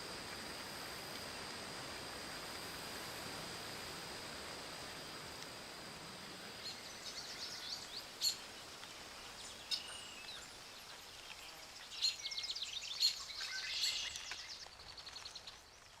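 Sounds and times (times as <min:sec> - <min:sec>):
steady hiss: 0:00.0 - 0:15.8
birds chirping and singing: 0:09.2 - 0:15.6.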